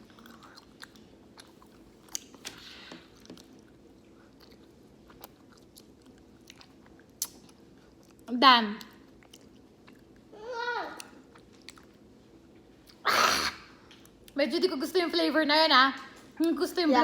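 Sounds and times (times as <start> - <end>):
chewing mouth clicks and smacks: 0.0 - 10.3, 11.0 - 12.1, 13.8 - 14.4
low steady hum: 0.0 - 17.0.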